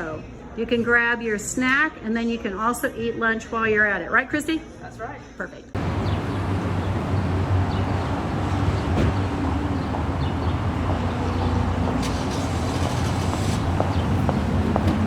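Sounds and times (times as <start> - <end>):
vehicle engine rumbling: 5.8 - 15.0.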